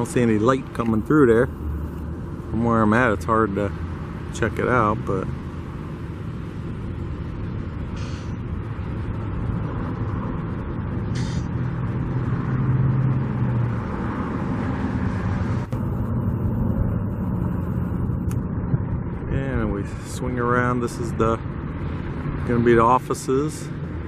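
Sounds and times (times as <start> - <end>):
heavy vehicle engine running: 0.0 - 12.5, 13.1 - 22.6
street traffic: 0.0 - 24.0
air brake hisses: 8.0 - 8.4, 11.2 - 11.5.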